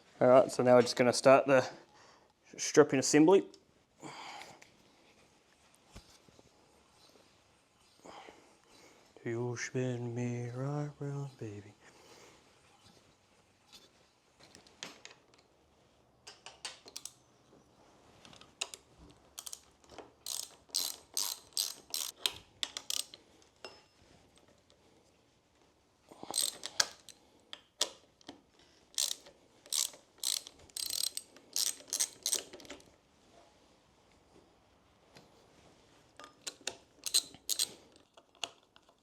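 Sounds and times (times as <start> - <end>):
ratchet wrench clicking: 19.4 - 19.6, 20.2 - 23.2, 26.3 - 27.2, 29.0 - 32.5, 37.0 - 37.7.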